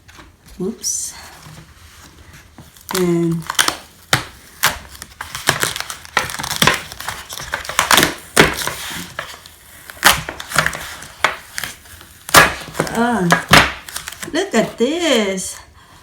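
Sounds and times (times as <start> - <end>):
packaging crackling and knocking: 2.6 - 14.7.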